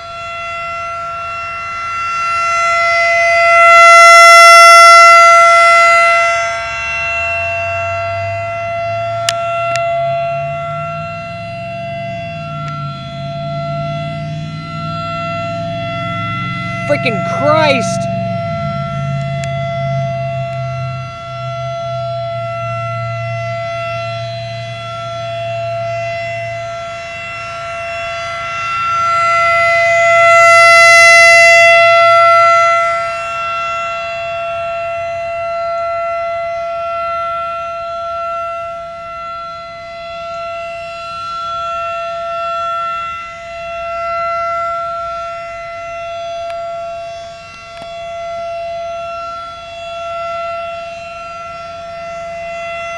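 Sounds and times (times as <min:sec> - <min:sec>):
loud warning siren steady tone: 0:00.0 - 0:52.9.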